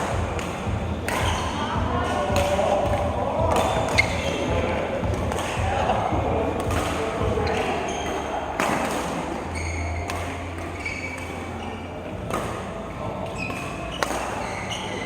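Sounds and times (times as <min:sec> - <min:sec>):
hall background noise: 0:00.0 - 0:15.0.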